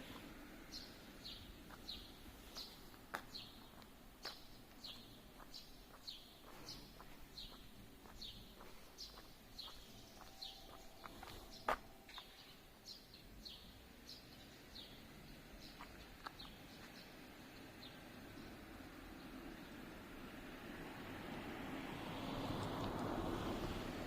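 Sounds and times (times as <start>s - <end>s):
bird chirping: 0.7s - 18.6s.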